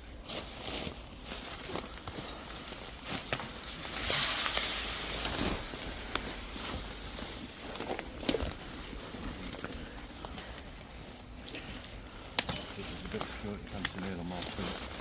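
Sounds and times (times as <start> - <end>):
loud rustling hiss: 2.9 - 7.7.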